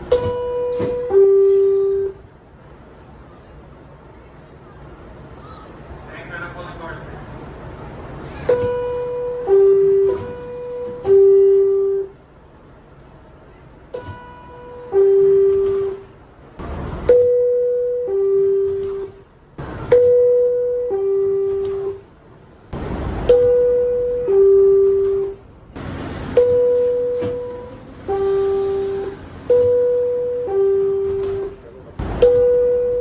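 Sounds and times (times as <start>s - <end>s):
two-tone door chime: 0.0s - 2.2s, 8.5s - 12.1s, 13.9s - 16.0s, 17.0s - 19.2s, 19.8s - 22.0s, 23.2s - 25.4s, 26.2s - 33.0s.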